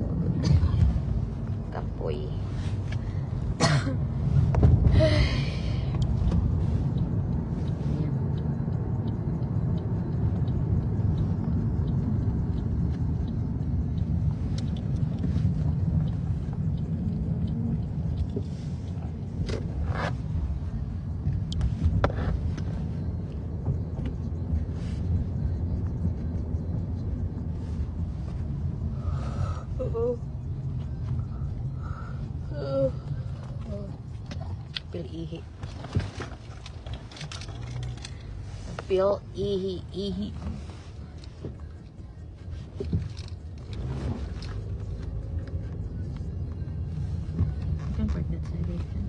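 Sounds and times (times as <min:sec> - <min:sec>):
car driving rumble inside cabin: 0:00.0 - 0:49.0.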